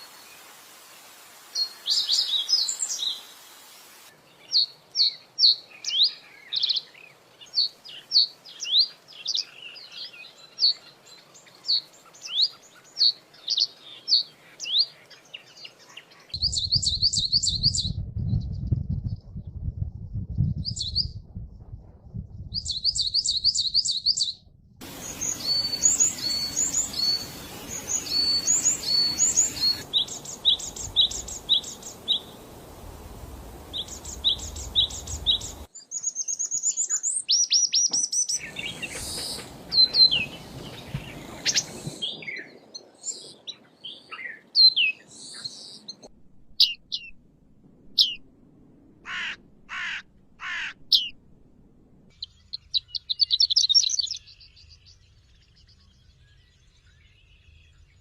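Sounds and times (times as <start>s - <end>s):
background hiss: 0.0s - 16.6s, 24.8s - 37.2s, 38.1s - 45.9s
songbirds chirping: 0.0s - 18.5s, 22.4s - 47.2s, 52.1s - 58.0s.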